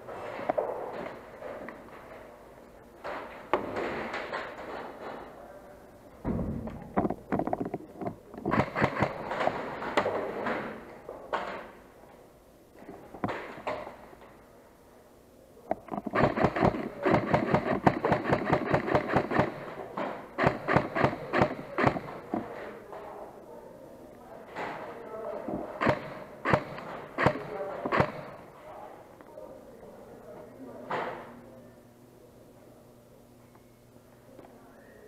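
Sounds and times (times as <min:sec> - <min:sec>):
airsoft guns firing bursts: 0:08.5 - 0:09.5, 0:16.0 - 0:19.8, 0:20.4 - 0:22.3, 0:25.8 - 0:28.4.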